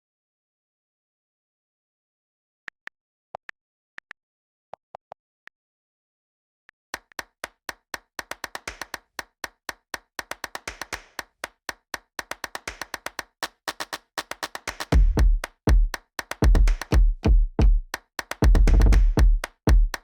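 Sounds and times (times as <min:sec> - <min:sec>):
clap-like clicks: 0:07.0 - 0:17.0, 0:17.9 - 0:20.0
fast drum-machine beat: 0:12.3 - 0:20.0.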